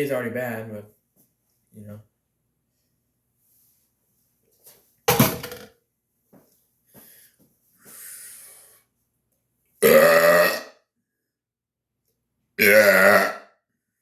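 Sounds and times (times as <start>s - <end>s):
person burping: 9.8s - 10.8s, 12.6s - 13.5s.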